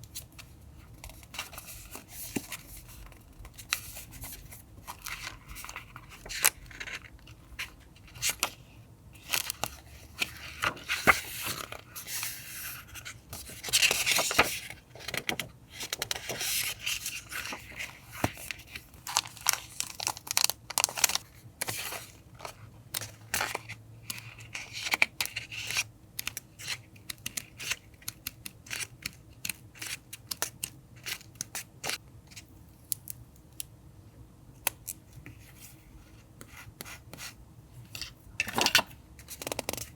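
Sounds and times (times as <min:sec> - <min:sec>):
paper rustling: 0:09.2 - 0:22.6.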